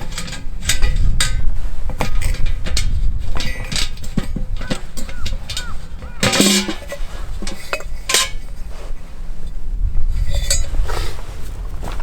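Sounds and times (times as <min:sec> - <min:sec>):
metal cookware and cutlery clattering: 0:00.0 - 0:08.5.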